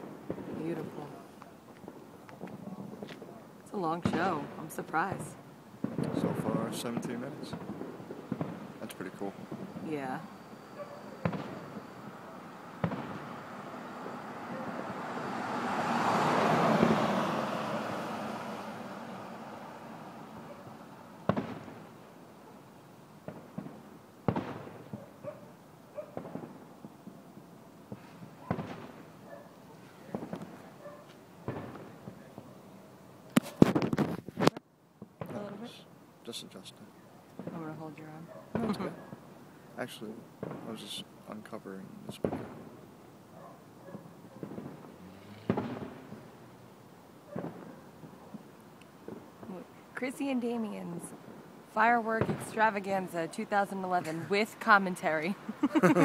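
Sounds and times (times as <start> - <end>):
fireworks bangs with echo: 0.0 - 15.6, 16.6 - 22.1, 23.2 - 25.4, 26.0 - 29.4, 30.0 - 32.8, 35.0 - 36.6, 37.4 - 42.9, 43.8 - 46.4, 47.3 - 55.2
small firework pops: 0.2 - 3.4, 5.8 - 10.2, 11.2 - 11.9, 12.8 - 13.4, 21.2 - 21.8, 23.2 - 25.1, 26.1 - 29.1, 29.8 - 32.6, 33.3 - 35.6, 42.1 - 42.8, 43.9 - 46.3, 47.3 - 49.6.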